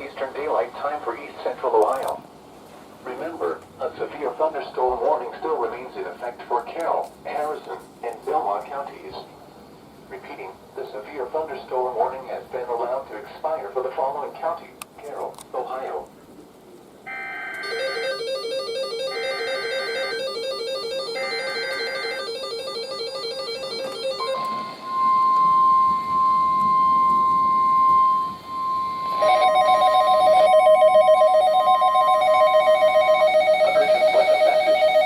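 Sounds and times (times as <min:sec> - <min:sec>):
steady warning alarm tone: 0:17.1 - 0:35.0
fast pulsing alarm beep: 0:17.6 - 0:35.0
rapid beeping: 0:17.6 - 0:35.0
warbling data bursts: 0:17.6 - 0:35.0.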